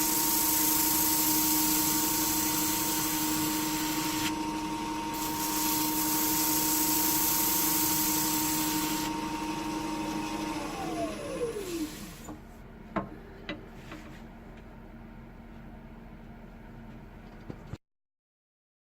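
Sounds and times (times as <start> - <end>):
loud high hiss: 0.0 - 4.3, 5.1 - 9.1
power tool motor running: 0.0 - 12.2.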